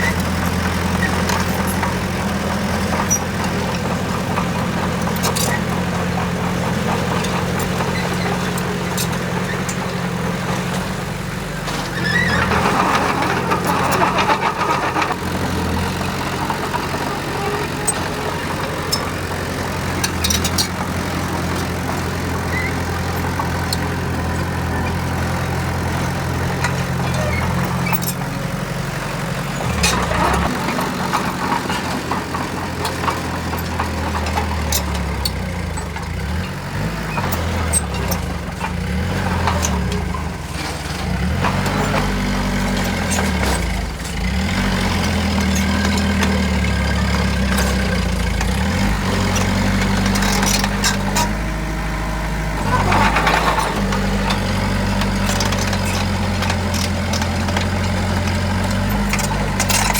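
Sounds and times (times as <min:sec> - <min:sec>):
heavy diesel engines running: 0:00.0 - 0:59.9.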